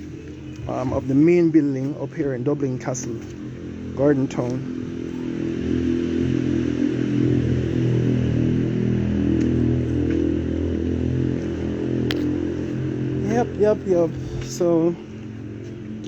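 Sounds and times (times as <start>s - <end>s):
vehicle engine running: 0.0s - 16.0s.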